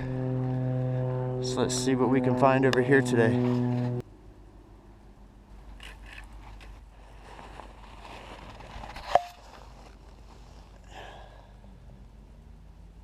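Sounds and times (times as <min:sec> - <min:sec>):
rustling and scuffing: 0:06.2 - 0:10.9.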